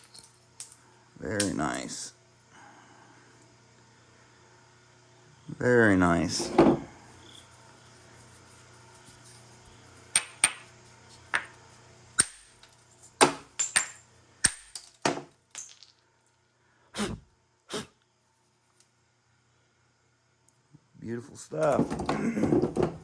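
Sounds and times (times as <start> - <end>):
stones clinking together: 12.2 - 16.0.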